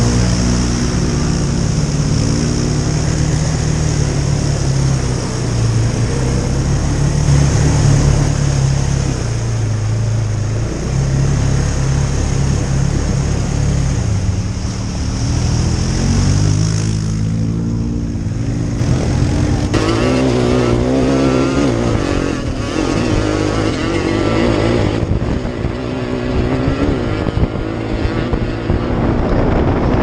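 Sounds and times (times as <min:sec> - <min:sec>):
engine revving: 0:00.0 - 0:30.0.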